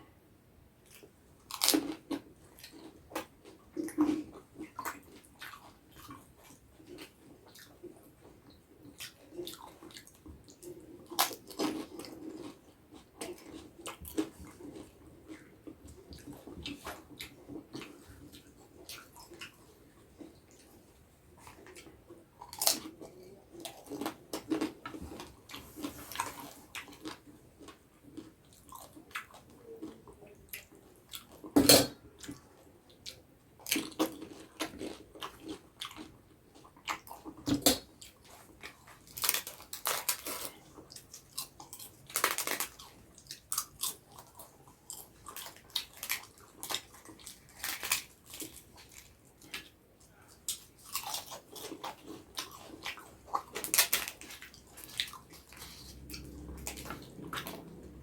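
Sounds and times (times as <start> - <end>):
wet chewing: 0.8 - 58.0
crisp food crunching: 33.6 - 49.8, 50.4 - 58.0.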